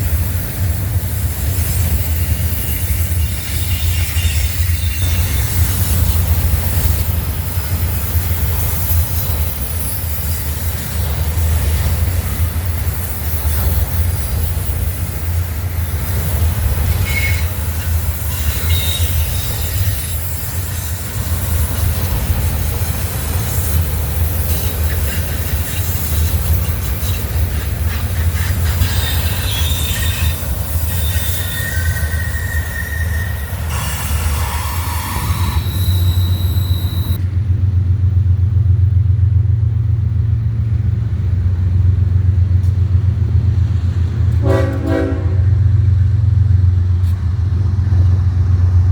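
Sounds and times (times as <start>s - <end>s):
train rumbling past: 0.0s - 48.9s
high-pitched wheel squeals: 1.6s - 10.6s, 16.8s - 21.0s, 24.4s - 37.2s.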